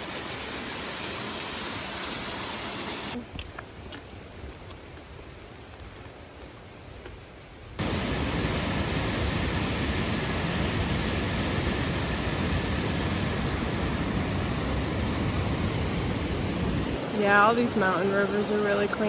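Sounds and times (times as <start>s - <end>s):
mountain river rushing: 7.8s - 19.0s.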